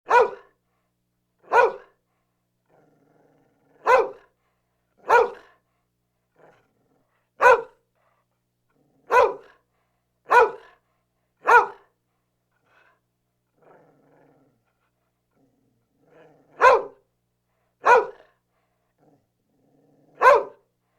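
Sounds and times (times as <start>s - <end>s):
dog barking: 0.1s - 0.5s, 1.4s - 1.9s, 3.8s - 4.3s, 5.0s - 5.6s, 7.4s - 7.8s, 9.1s - 9.6s, 10.3s - 10.8s, 11.4s - 11.9s, 16.6s - 17.0s, 17.8s - 18.3s, 20.2s - 20.7s.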